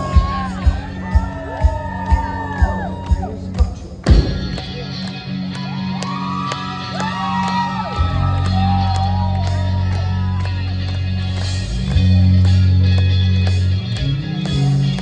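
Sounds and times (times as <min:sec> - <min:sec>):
audience shouting and whooping: 0:00.0 - 0:03.6, 0:04.7 - 0:10.8
drums beating: 0:00.0 - 0:05.4
bass and guitar chord: 0:03.9 - 0:06.0, 0:07.9 - 0:15.0.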